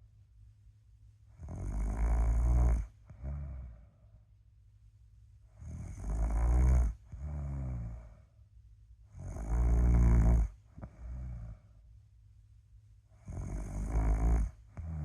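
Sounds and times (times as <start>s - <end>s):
loud snoring: 1.4s - 3.8s, 5.6s - 8.1s, 9.2s - 11.6s, 13.2s - 15.0s.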